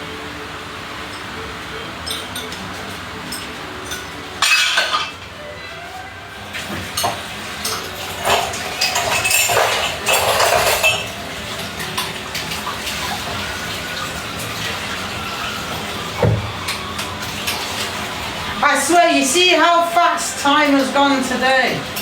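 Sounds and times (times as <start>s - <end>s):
water running and splashing: 1.0s - 22.0s
dishes clinking: 2.0s - 5.7s, 6.6s - 13.8s.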